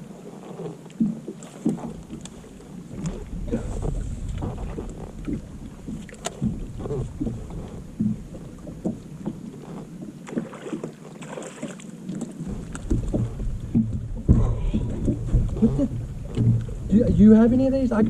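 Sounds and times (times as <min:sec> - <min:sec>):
wind buffeting microphone: 0:02.9 - 0:10.1, 0:12.4 - 0:18.0
small knocks: 0:12.4 - 0:16.8.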